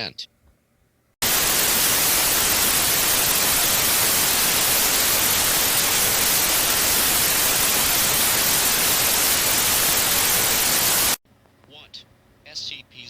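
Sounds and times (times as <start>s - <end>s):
loud static hiss: 1.2s - 11.2s.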